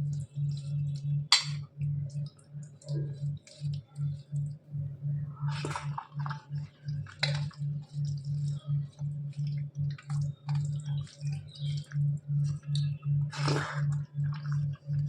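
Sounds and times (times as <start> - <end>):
low throbbing hum: 0.0 - 15.0
close-up chewing and mouth clicks: 5.5 - 15.0.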